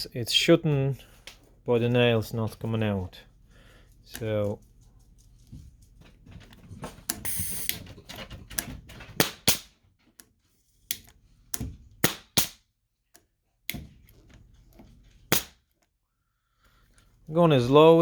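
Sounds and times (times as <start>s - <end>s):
short air hiss: 7.2s - 7.7s
nail gun firing: 9.2s - 9.7s, 12.0s - 12.6s, 15.3s - 15.6s.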